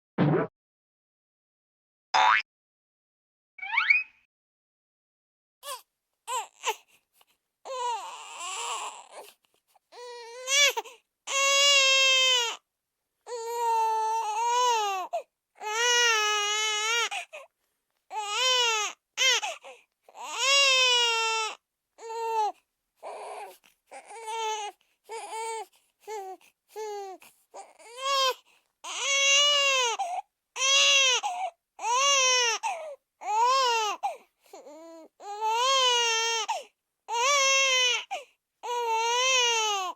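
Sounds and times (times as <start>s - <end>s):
baby crying: 5.6s - 6.8s, 7.7s - 9.3s, 9.9s - 12.6s, 13.3s - 17.4s, 18.1s - 19.6s, 20.2s - 39.9s.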